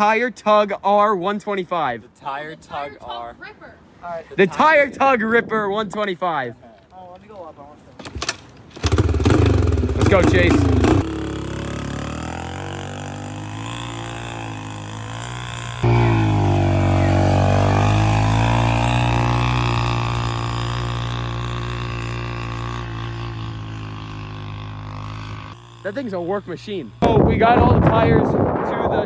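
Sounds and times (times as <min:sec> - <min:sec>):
dirt bike engine under load: 0:08.0 - 0:28.0.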